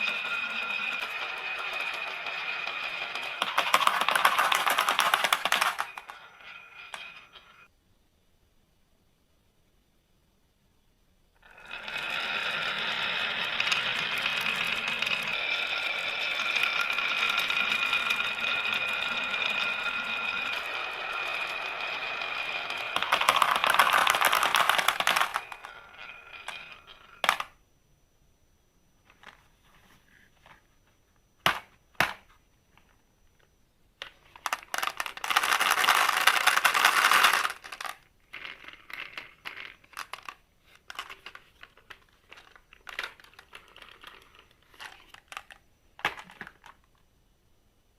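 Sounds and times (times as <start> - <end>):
marbles clattering: 0.0 - 7.7, 11.4 - 27.6, 34.0 - 47.0
marbles rolling down a track: 0.0 - 7.7, 11.4 - 27.6, 34.0 - 47.0.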